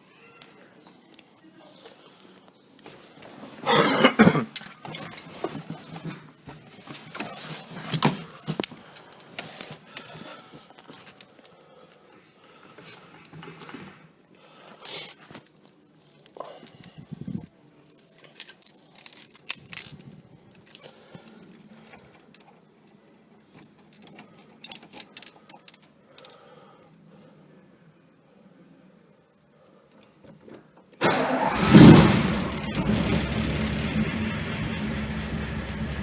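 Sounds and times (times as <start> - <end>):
car keys jangling: 23.6 - 25.9.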